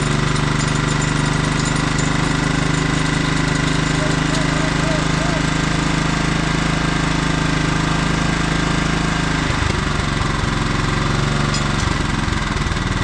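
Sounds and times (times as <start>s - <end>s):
riding lawn mower engine running: 0.0s - 13.0s.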